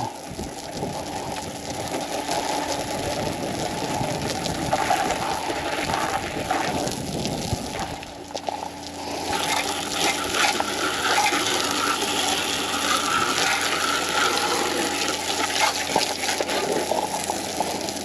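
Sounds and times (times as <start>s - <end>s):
hose water spraying: 0.0s - 18.0s.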